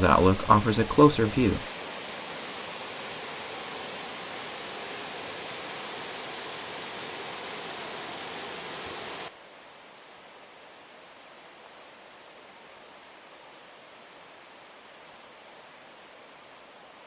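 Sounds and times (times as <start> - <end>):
waterfall rushing: 0.0 - 9.3.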